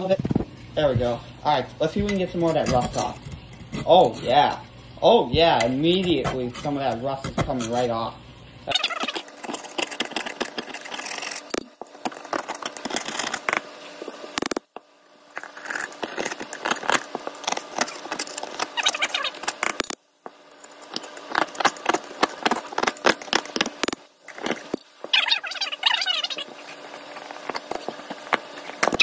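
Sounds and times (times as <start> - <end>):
screwdriver scraping rust off metal: 2.1 - 4.3.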